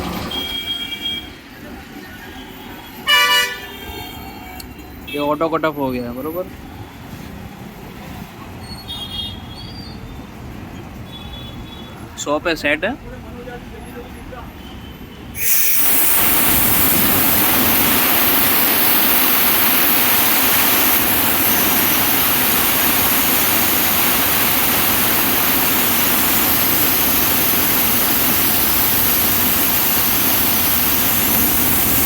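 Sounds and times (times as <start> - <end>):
air compressor rushing: 0.0 - 1.0, 15.4 - 32.0.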